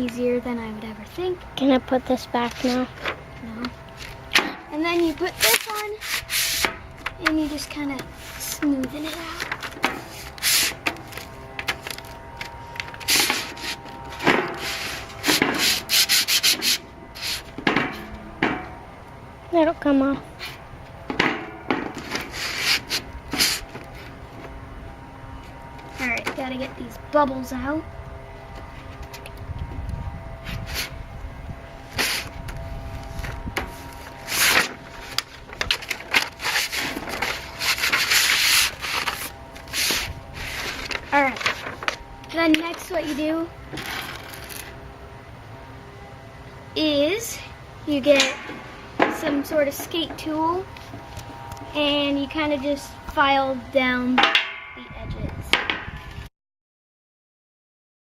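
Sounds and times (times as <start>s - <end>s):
rubbing grip tape: 2.5s - 3.1s, 5.0s - 17.6s, 22.0s - 24.1s, 30.4s - 30.9s, 31.9s - 32.4s, 33.0s - 43.2s.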